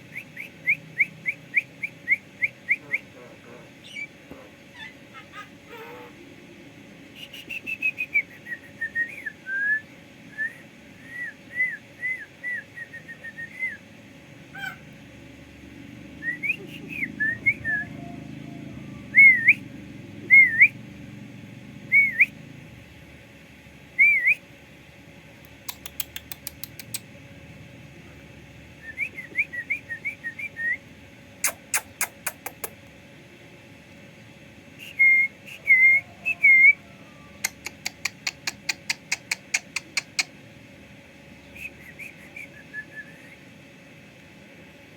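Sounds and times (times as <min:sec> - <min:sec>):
bird whistling: 0:03.8 - 0:06.1, 0:07.2 - 0:13.8, 0:16.2 - 0:18.2, 0:18.9 - 0:19.6, 0:20.3 - 0:20.8, 0:21.9 - 0:22.4, 0:24.0 - 0:24.4, 0:28.8 - 0:30.8, 0:34.8 - 0:36.9, 0:41.6 - 0:43.4
rapid sharp clicks: 0:25.5 - 0:27.0.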